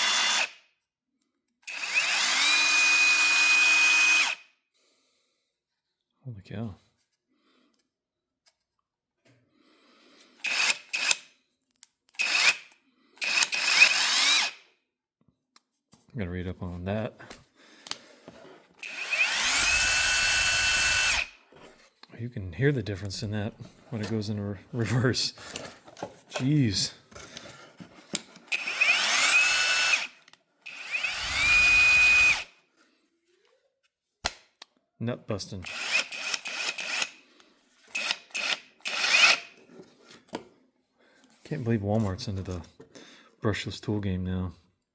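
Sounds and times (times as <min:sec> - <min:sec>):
impact wrench whirring: 0:00.0 - 0:00.6, 0:01.6 - 0:04.4, 0:10.4 - 0:11.3, 0:12.1 - 0:14.6, 0:18.8 - 0:21.4, 0:28.4 - 0:32.6, 0:35.6 - 0:37.2, 0:37.8 - 0:39.6.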